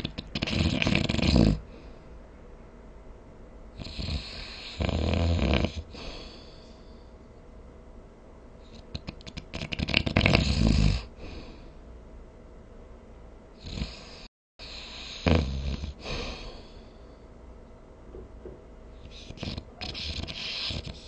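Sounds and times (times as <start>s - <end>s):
person snoring: 0.0s - 1.6s, 9.0s - 11.5s, 13.6s - 16.8s
soft breath: 1.6s - 2.3s, 5.8s - 7.4s, 11.1s - 11.9s, 16.0s - 17.4s.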